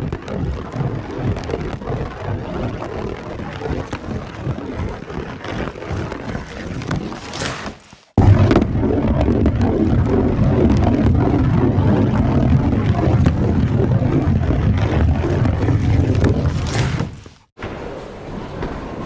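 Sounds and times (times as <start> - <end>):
bowling ball rolling down a lane: 8.2 - 19.0.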